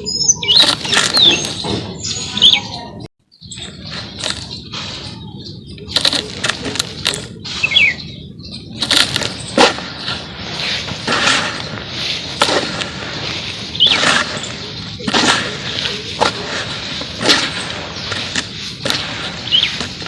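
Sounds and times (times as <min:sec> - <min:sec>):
charcoal crumbling and cracking: 0:05.8 - 0:07.7, 0:08.6 - 0:20.0.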